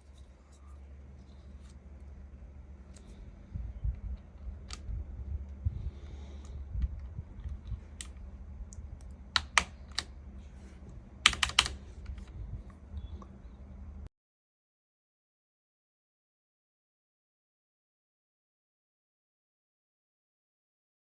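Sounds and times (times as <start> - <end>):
keyboard keycaps clicking: 6.4 - 10.2, 10.8 - 12.3.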